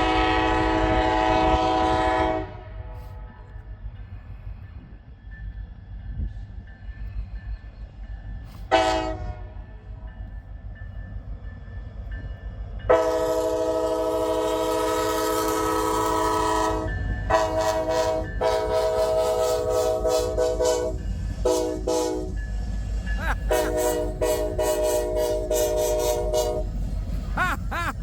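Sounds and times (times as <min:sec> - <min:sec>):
locomotive air horn blasts: 0:00.0 - 0:03.2, 0:08.7 - 0:09.6, 0:12.9 - 0:22.4, 0:23.4 - 0:26.8.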